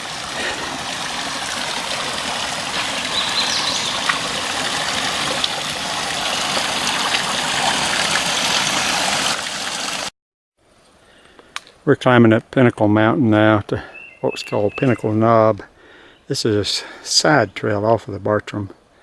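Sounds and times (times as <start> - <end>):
rush of falling water: 0.0 - 10.1.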